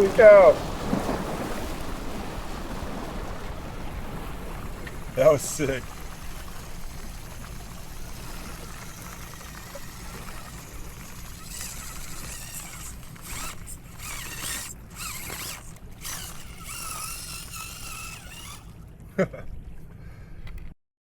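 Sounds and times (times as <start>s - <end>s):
small electric motor and gears whining: 4.8s - 19.0s.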